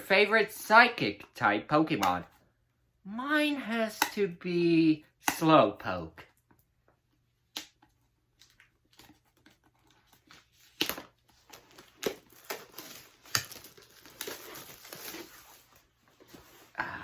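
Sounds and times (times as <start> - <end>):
sharp snaps: 5.2 - 5.6
packaging crinkling and tearing: 8.4 - 16.0
rustling: 8.9 - 16.8.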